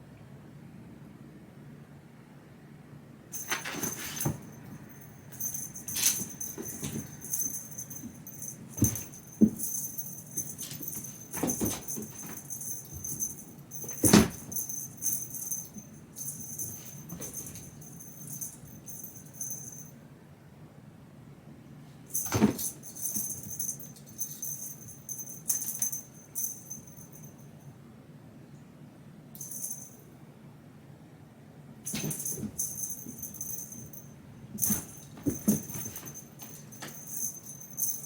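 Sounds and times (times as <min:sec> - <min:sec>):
metallic jingling and rattling: 0:03.4 - 0:19.9, 0:22.1 - 0:27.4, 0:31.9 - 0:38.0
steady high ring: 0:03.4 - 0:20.0, 0:22.1 - 0:27.8, 0:29.4 - 0:30.2, 0:31.9 - 0:38.0.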